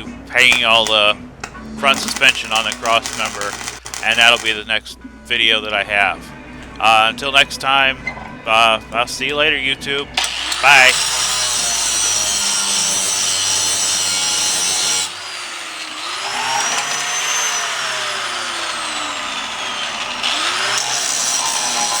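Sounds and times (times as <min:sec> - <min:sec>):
angle grinder whining: 0:01.8 - 0:04.7, 0:10.2 - 0:22.0.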